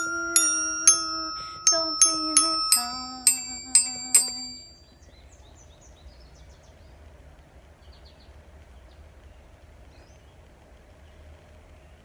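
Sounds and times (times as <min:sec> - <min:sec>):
low hum: 0:00.0 - 0:05.1.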